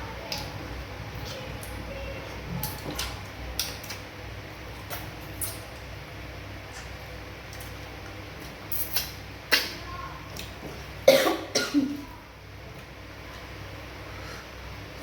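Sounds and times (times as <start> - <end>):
person coughing: 11.1 - 12.0.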